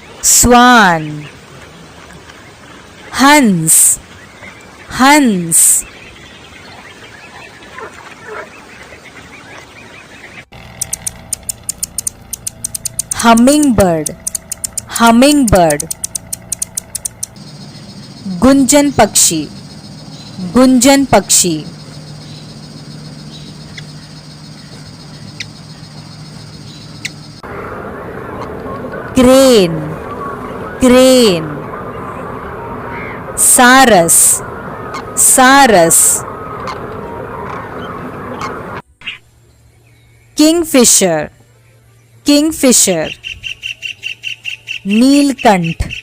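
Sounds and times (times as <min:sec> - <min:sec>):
hummingbird wings humming: 0:09.4 - 0:38.8
noisy background: 0:10.4 - 0:43.2
high chip calls: 0:10.5 - 0:18.3
sharp clicks: 0:10.6 - 0:17.4
swan honking: 0:34.2 - 0:35.2, 0:36.2 - 0:39.2.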